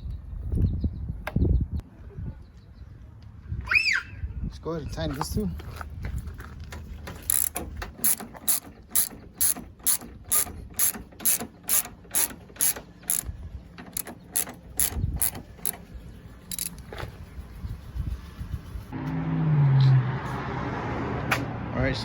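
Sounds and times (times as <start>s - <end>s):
socket ratchet clicking: 7.1s - 15.9s, 16.5s - 16.9s.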